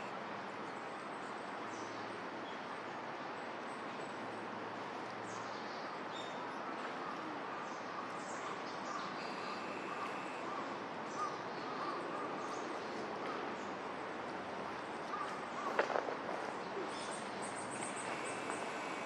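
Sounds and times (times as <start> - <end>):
background hiss: 15.6 - 19.0
birds calling: 16.7 - 19.0.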